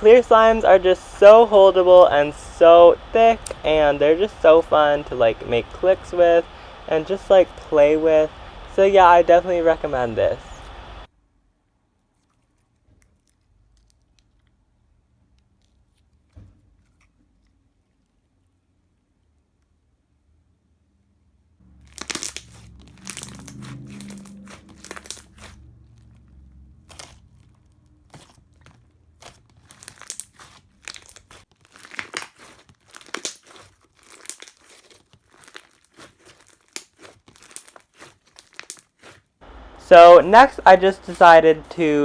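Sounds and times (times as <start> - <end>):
slime squelching and popping: 29.2 - 39.2.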